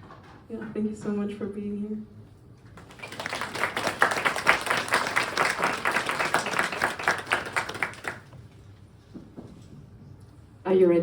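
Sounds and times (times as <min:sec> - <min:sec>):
small audience clapping: 0:02.8 - 0:08.4.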